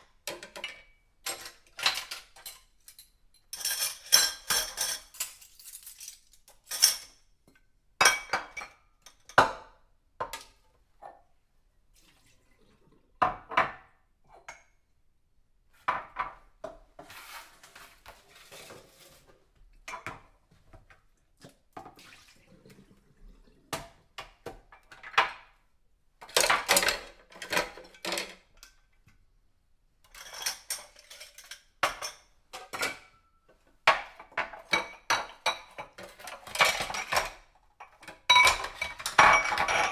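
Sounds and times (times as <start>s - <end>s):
dishes clinking and clattering: 0.2s - 7.2s, 8.0s - 10.6s, 19.8s - 20.4s, 26.2s - 28.8s, 30.0s - 39.9s.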